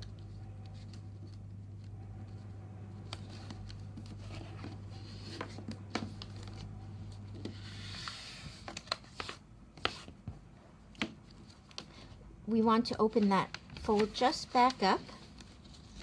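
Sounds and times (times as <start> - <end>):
paper being folded and creased: 0.0 - 1.5, 2.3 - 6.7, 7.3 - 10.1, 12.8 - 16.0.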